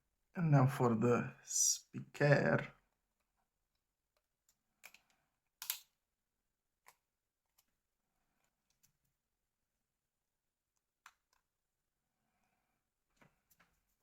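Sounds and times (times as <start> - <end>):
plastic parts clicking: 4.8 - 5.9.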